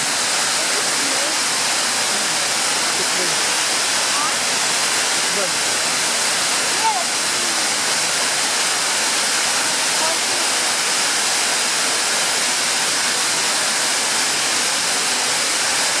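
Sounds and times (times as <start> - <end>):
waterfall rushing: 0.0 - 16.0.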